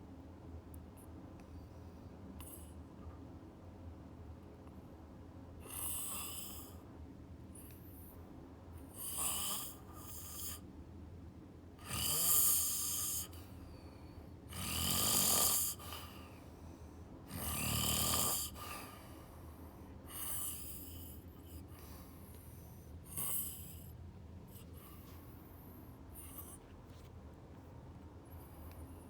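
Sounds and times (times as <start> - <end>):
person snoring: 11.8 - 13.3, 14.5 - 15.9, 17.3 - 18.8
soft breathing: 13.1 - 14.4, 15.7 - 17.3, 18.5 - 29.0.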